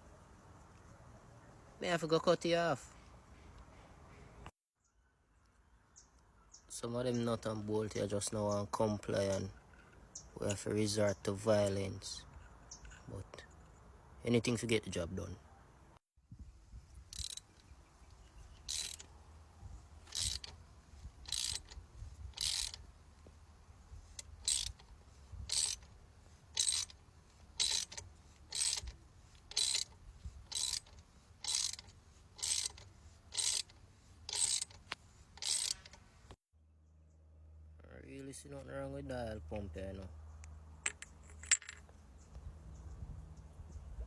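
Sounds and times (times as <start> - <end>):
hand tool scratchy rasping: 18.6 - 19.1, 20.0 - 22.9, 24.0 - 36.0.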